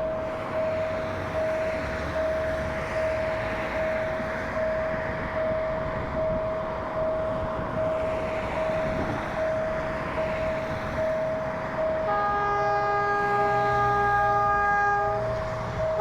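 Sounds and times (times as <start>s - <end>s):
low train rumbling: 0.0s - 16.0s
locomotive air horn chord: 12.1s - 16.0s.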